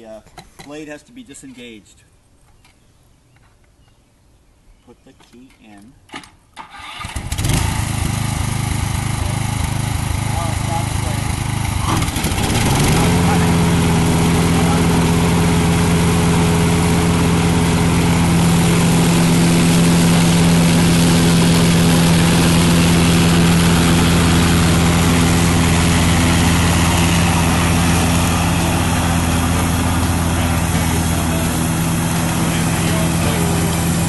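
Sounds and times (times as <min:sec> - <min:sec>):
riding lawn mower engine running: 0:06.6 - 0:34.0.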